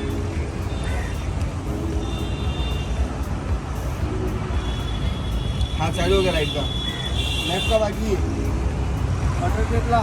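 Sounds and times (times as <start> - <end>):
road traffic rumble: 0.0 - 10.0.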